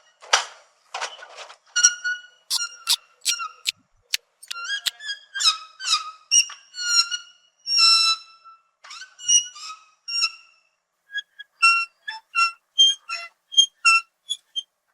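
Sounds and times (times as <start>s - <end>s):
sloth squeaking: 2.5s - 3.4s.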